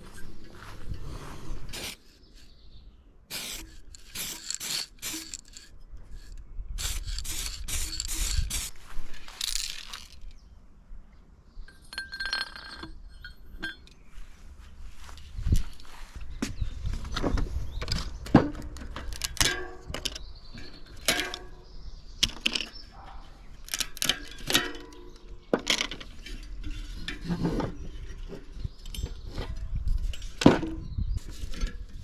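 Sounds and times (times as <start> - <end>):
metal tools clinking and scraping: 0.0 - 2.5, 3.3 - 10.4, 11.7 - 14.0, 17.8 - 21.6, 22.2 - 32.0.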